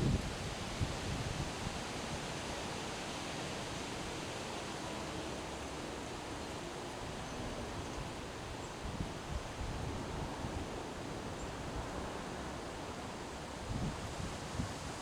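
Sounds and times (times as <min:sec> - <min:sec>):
wind rushing through trees: 0:00.0 - 0:15.0.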